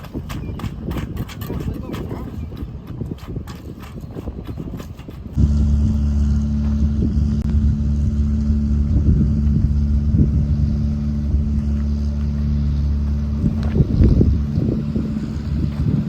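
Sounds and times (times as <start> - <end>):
large engine running: 5.4 - 16.0.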